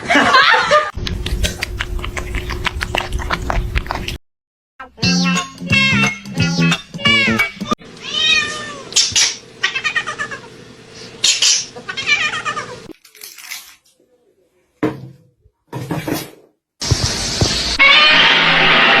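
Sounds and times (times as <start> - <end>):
cat meowing: 7.0 - 7.4, 8.0 - 9.0, 17.8 - 18.5.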